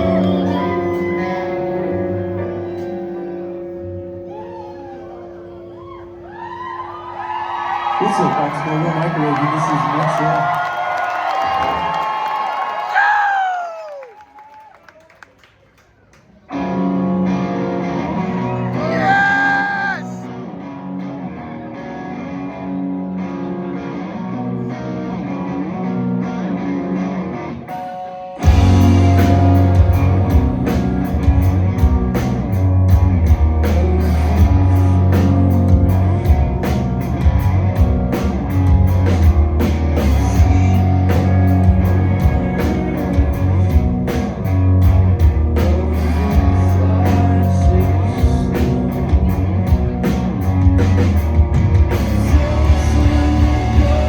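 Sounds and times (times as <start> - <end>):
heavy bass: 0.0 - 6.3, 28.4 - 54.0
rock band playing: 0.0 - 8.5, 16.5 - 54.0
electric guitar: 0.0 - 12.2, 16.4 - 54.0
drums: 27.7 - 54.0.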